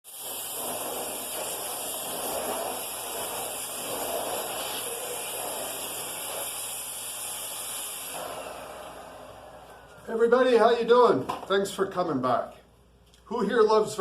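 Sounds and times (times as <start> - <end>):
vacuum cleaner running: 0.0 - 10.2.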